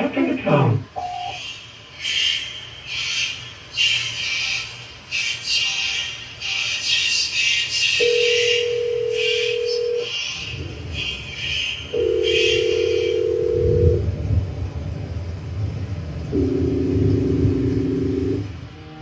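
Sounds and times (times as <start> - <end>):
hissy pulses: 0.0 - 19.0
long steady telephone beeps: 8.0 - 10.1, 11.8 - 14.1, 16.3 - 18.5
deep rumble: 10.5 - 18.8.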